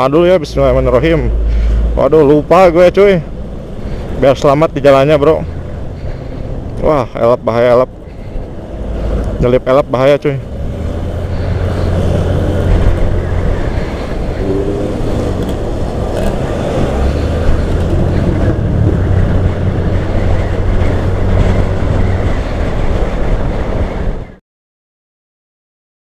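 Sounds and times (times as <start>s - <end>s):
road noise: 0.0s - 24.4s
scooter engine: 10.4s - 23.3s
wind rumble on microphone: 10.4s - 24.4s.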